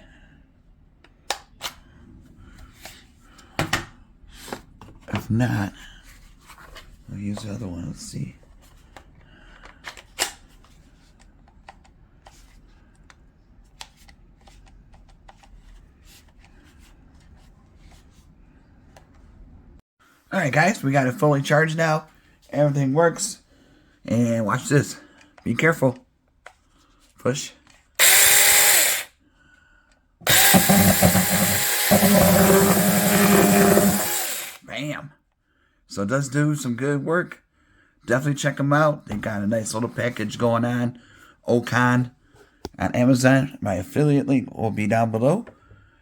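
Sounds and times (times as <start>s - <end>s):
mini chainsaw running: 28.0s - 29.1s, 30.2s - 34.6s.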